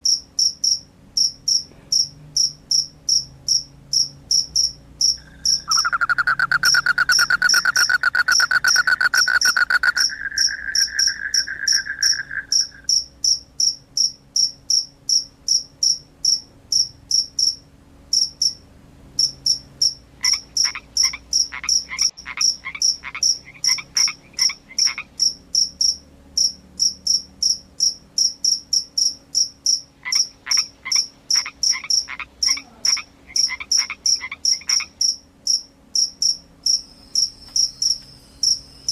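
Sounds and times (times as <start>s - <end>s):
lower pulsed animal call: 5.1s - 13.0s, 20.2s - 25.1s
loud fast trill: 5.2s - 13.0s
short high-pitched chirps: 5.2s - 13.0s.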